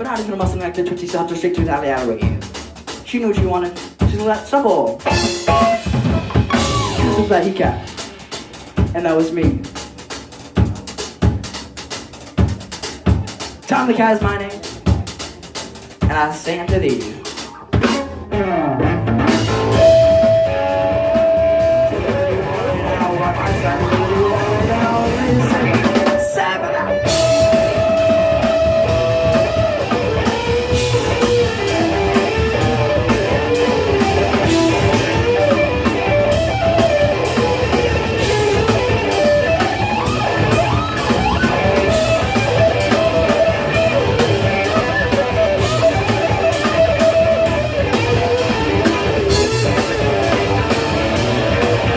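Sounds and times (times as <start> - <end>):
bass guitar: 0.0 - 51.9
drum kit: 0.0 - 51.9
lead guitar: 4.9 - 8.4, 17.3 - 51.9.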